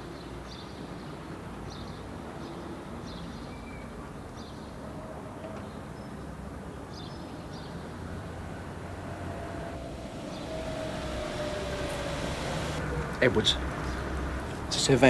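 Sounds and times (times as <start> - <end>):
distant traffic rumble: 7.2 - 15.0.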